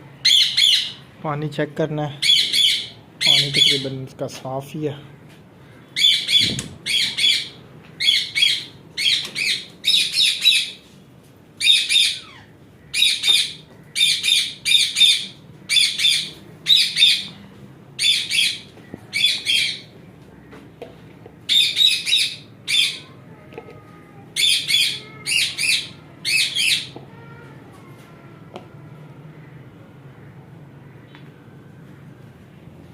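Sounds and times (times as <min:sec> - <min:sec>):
parrot calling: 0:00.2 - 0:01.0, 0:02.2 - 0:03.8, 0:05.8 - 0:10.8, 0:11.6 - 0:17.4, 0:18.0 - 0:20.5, 0:21.4 - 0:23.2, 0:24.3 - 0:27.4.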